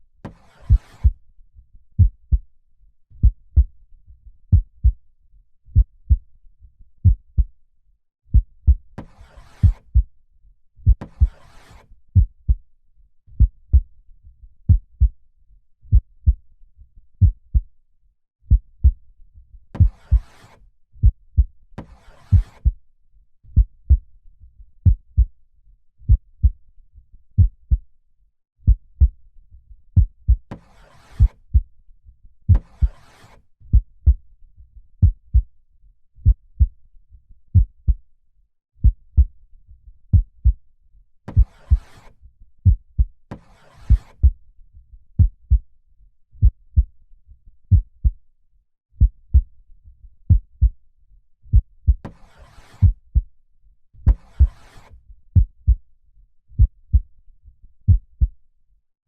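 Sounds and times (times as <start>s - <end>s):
heartbeat thumps: 4.5s - 5.0s, 8.3s - 8.8s, 17.2s - 17.6s, 22.3s - 22.6s, 23.6s - 24.0s, 27.4s - 27.8s, 31.2s - 31.6s, 33.7s - 34.2s, 35.0s - 35.4s, 37.6s - 38.0s, 38.8s - 39.3s, 45.2s - 45.6s, 49.0s - 49.5s, 50.3s - 50.8s, 51.5s - 52.0s, 52.8s - 53.3s, 55.4s - 55.8s, 56.6s - 57.1s, 57.9s - 58.3s.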